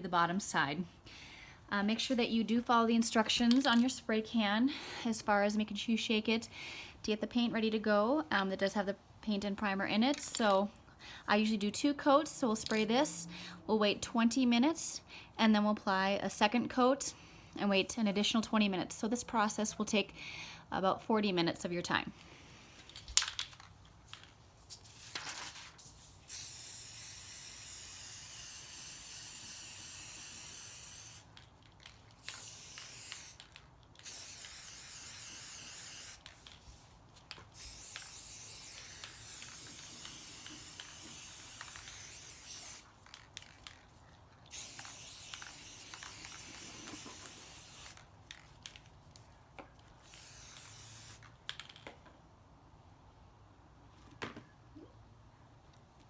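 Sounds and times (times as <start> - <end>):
aerosol spray can hissing: 25.9 - 31.3, 32.2 - 36.5, 37.5 - 42.9, 44.5 - 48.0, 50.0 - 51.3.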